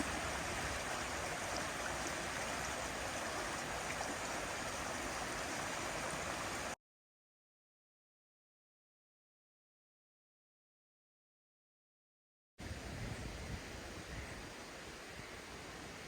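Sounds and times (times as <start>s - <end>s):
river water rushing: 0.0s - 6.8s.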